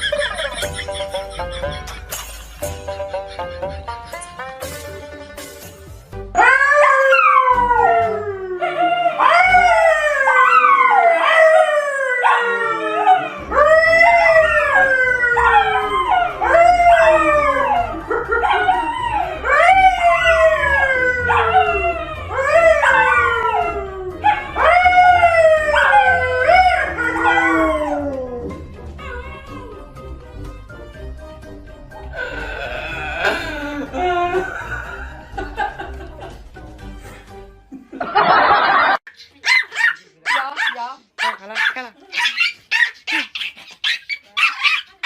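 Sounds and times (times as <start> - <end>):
animal howling: 6.4 - 30.0, 32.1 - 34.8.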